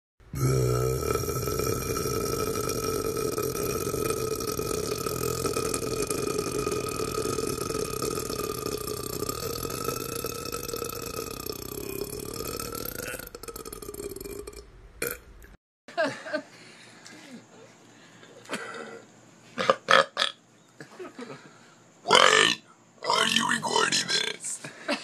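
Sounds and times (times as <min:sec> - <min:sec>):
man belching: 0:00.3 - 0:15.2, 0:22.1 - 0:24.4.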